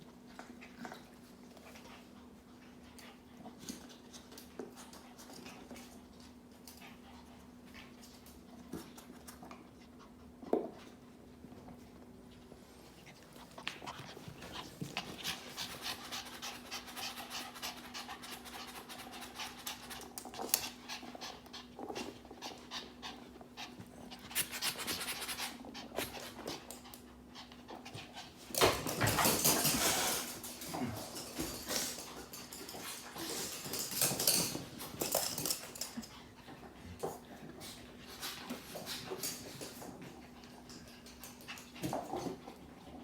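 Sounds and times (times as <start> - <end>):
puppy panting: 12.8 - 28.4.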